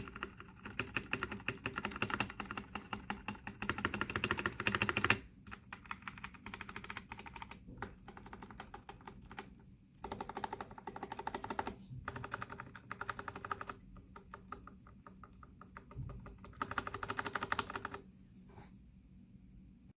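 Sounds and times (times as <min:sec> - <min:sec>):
mechanical keyboard typing: 0:00.0 - 0:18.1.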